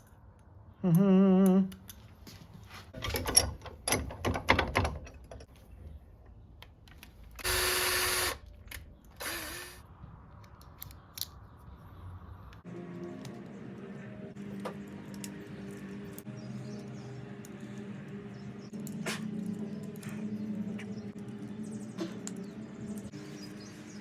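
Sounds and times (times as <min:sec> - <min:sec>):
handheld rotary tool running: 0:07.4 - 0:08.4, 0:09.2 - 0:09.8.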